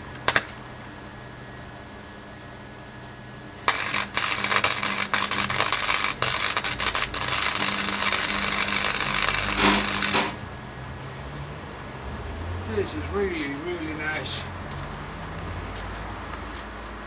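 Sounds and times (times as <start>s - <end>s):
welding arc crackling: 3.6s - 10.4s.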